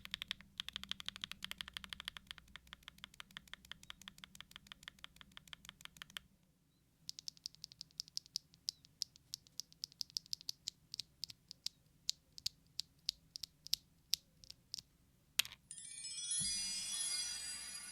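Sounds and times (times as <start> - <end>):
mechanical keyboard typing: 0.0 - 6.2
music: 15.7 - 17.9.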